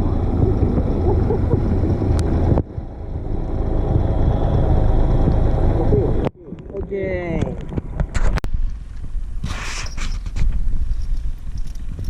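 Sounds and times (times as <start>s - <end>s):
loud low rumble: 0.0s - 9.4s.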